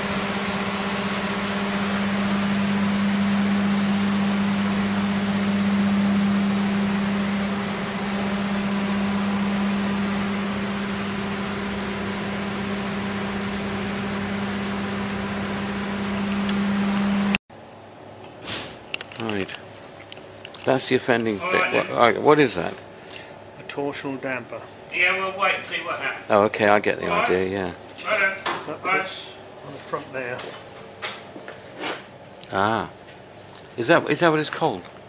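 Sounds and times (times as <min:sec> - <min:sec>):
engine running steadily: 0:00.0 - 0:17.4.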